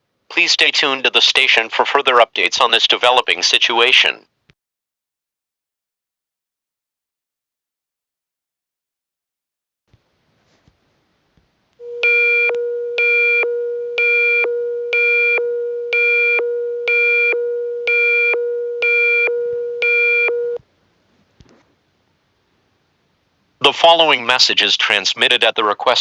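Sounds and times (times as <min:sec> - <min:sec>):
steady low alert tone: 0:11.8 - 0:20.6
buzzy pulsing beeps: 0:12.0 - 0:20.6.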